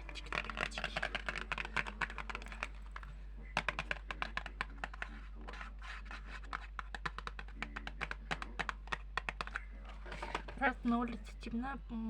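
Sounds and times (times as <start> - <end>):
fingers tapping sharp clicks: 0.0 - 5.6, 6.4 - 9.7
scratchy rubbing: 0.0 - 11.2
low background hum: 0.0 - 12.0.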